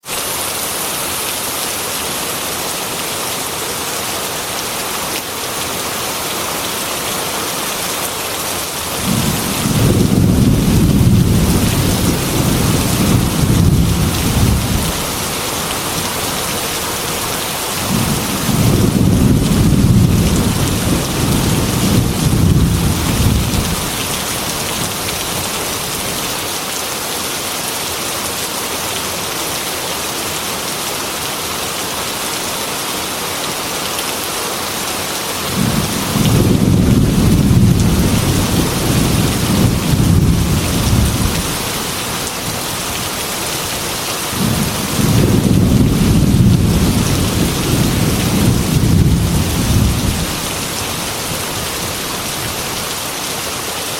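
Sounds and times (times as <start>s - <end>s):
heavy rain on a window: 0.1s - 53.9s
thunder rumbling: 8.9s - 16.6s, 17.8s - 25.6s, 35.5s - 42.8s, 44.4s - 52.0s.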